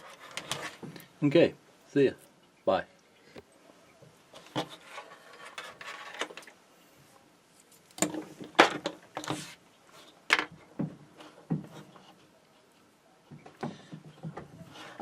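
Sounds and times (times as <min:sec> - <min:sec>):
rustling: 0:04.3 - 0:12.9.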